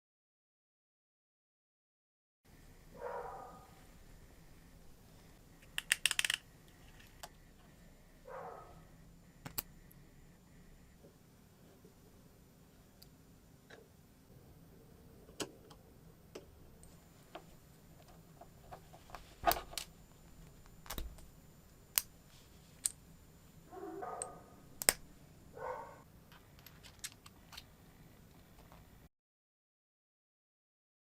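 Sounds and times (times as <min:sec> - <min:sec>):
metal parts clicking and tapping: 0:05.6 - 0:07.4.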